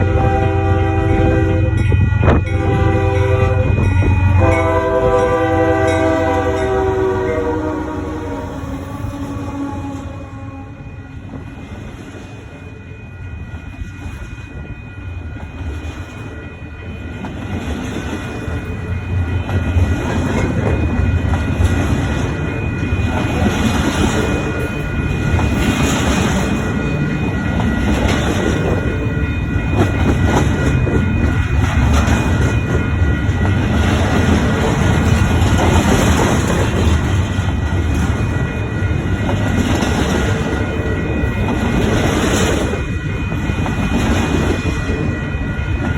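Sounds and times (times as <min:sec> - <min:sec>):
freight train wheels clattering: 0:15.4 - 0:45.9.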